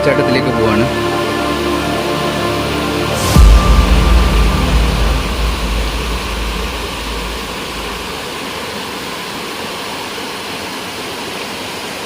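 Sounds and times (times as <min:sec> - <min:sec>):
low background music: 0:00.0 - 0:08.6
waterfall rushing: 0:00.0 - 0:12.0.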